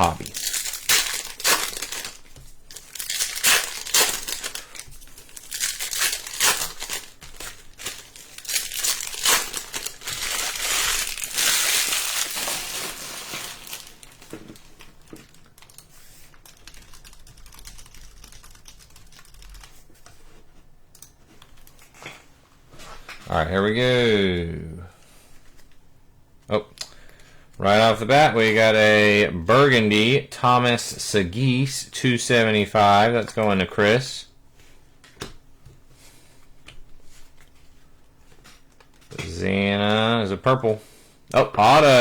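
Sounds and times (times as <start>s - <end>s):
plastic wrappers crinkling and tearing: 0.0s - 17.0s
soft rustling and handling: 25.0s - 26.5s, 34.5s - 39.4s.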